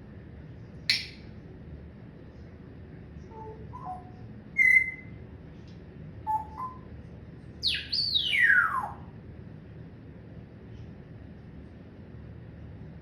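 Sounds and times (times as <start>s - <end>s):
parrot whistling: 0.9s - 1.2s, 3.3s - 5.1s, 6.3s - 6.8s, 7.6s - 9.0s.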